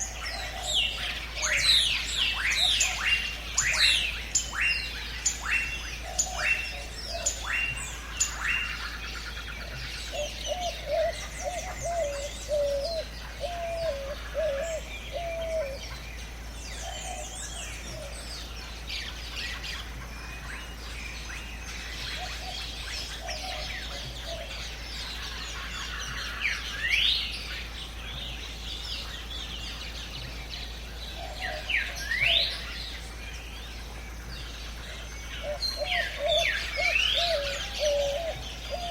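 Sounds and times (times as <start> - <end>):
birds calling: 0.0 - 38.9
low wavering bird call: 10.1 - 15.8, 35.2 - 38.9.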